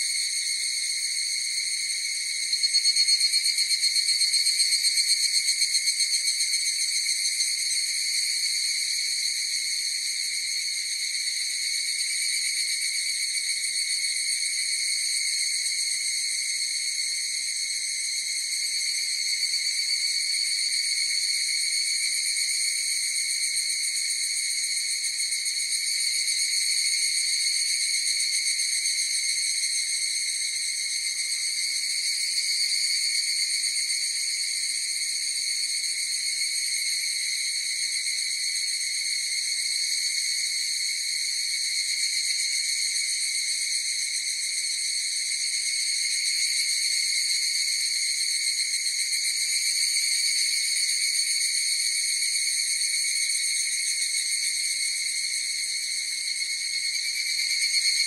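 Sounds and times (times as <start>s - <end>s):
cicadas buzzing in chorus: 0.0s - 58.0s.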